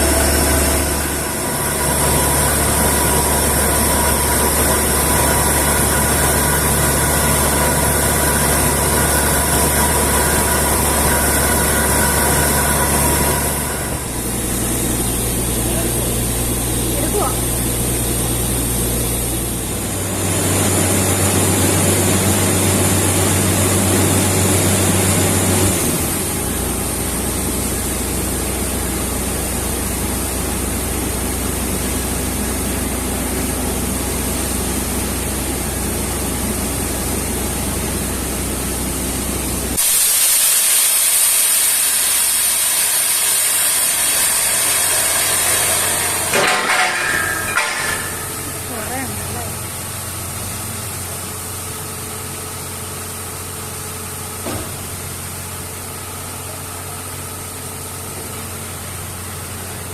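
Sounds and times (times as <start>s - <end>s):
drilling rig drone: 0.0s - 40.3s, 41.6s - 51.1s
loud hiss: 39.8s - 50.1s.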